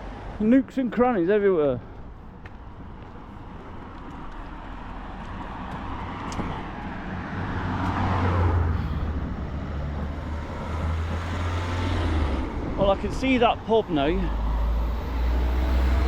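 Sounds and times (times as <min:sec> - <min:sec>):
low engine hum: 0:01.9 - 0:16.0
vehicle passing by: 0:04.5 - 0:16.0.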